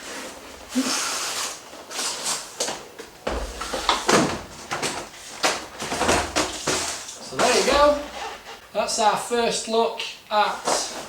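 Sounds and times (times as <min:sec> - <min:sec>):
cardboard scraping on cardboard: 0:05.8 - 0:08.6.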